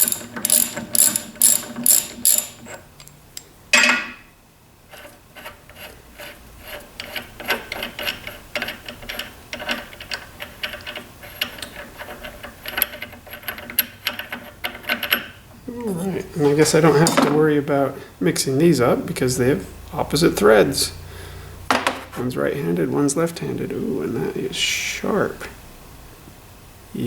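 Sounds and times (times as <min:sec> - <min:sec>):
ratchet wrench clicking: 0:00.0 - 0:03.2.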